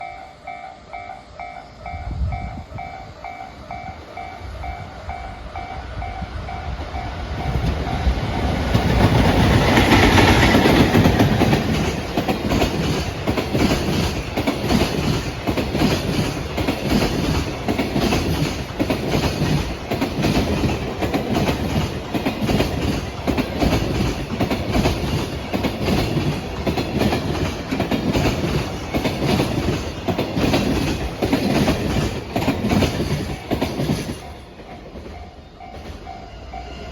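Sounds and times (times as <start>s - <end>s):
level crossing warning bell: 0.0s - 8.6s
electric locomotive approaching: 0.0s - 36.9s
train wheels clattering over rail joints: 5.2s - 36.2s.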